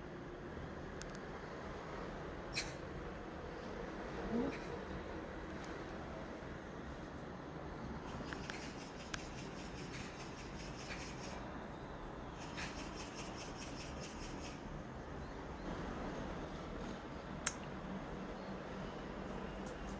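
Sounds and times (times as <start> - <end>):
small birds twittering: 2.4 - 2.9, 7.9 - 17.6.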